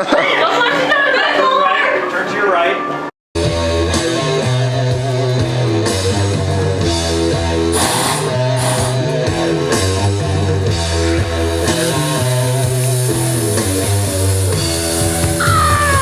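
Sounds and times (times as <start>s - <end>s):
rock music with guitar and bass: 3.4s - 16.0s.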